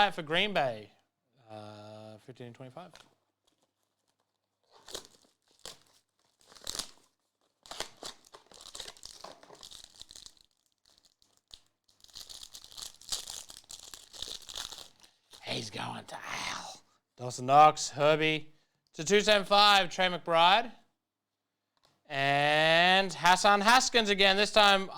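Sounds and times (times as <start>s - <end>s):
wrappers being torn open: 2.9s - 15.4s
packaging crinkling: 3.0s - 15.4s.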